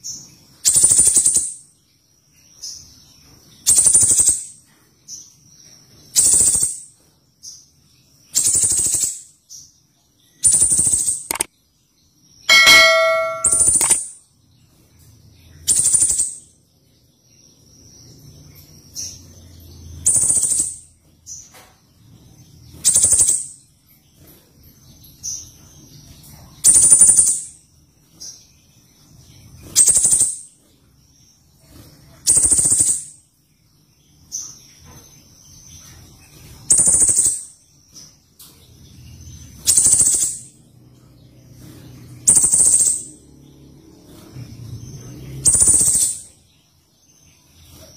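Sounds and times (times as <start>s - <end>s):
soft high bird notes: 12.5s - 14.0s.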